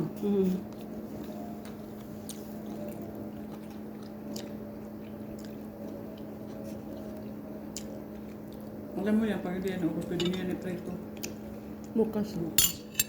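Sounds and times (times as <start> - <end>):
steady low hum: 0.0 - 13.0
chewing and biting: 0.6 - 9.0.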